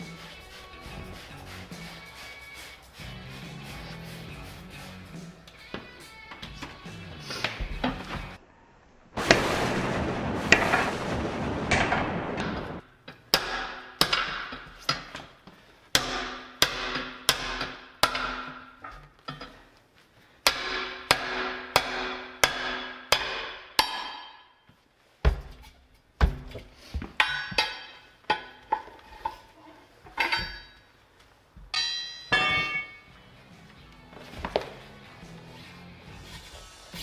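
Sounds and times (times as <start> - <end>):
rushing noise: 9.2 - 12.8.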